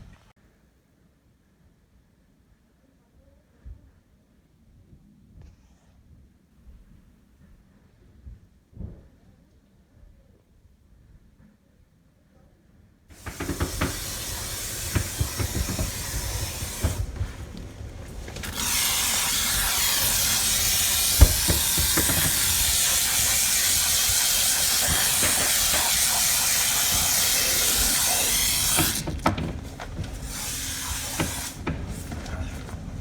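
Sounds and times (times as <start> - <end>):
knocks and bumps: 13.1 - 33.0
pressurised spraying hiss: 13.1 - 33.0.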